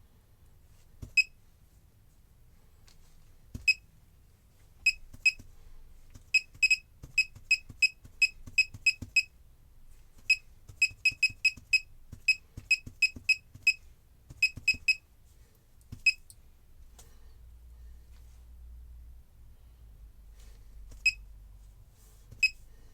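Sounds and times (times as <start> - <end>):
keyboard key-click beeps: 1.1 - 1.3, 3.6 - 3.8, 4.9 - 5.4, 6.3 - 9.3, 10.3 - 13.8, 14.4 - 15.0.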